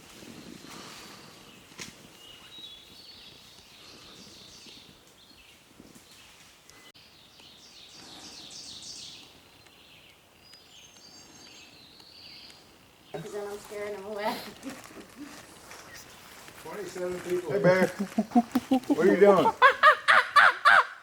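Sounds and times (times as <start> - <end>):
faint songbirds singing: 0.8 - 14.7.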